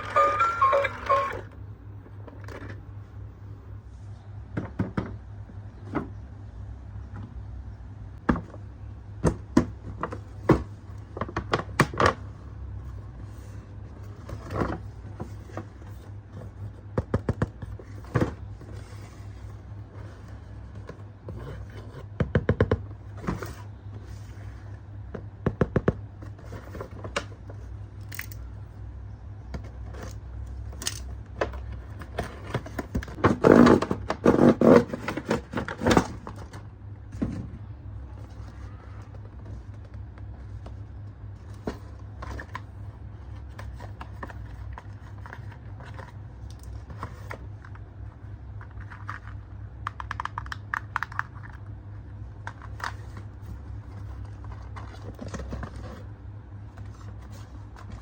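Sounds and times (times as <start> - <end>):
toys being unboxed: 0.0 - 3.2, 37.9 - 58.0
steady low hum: 0.0 - 58.0.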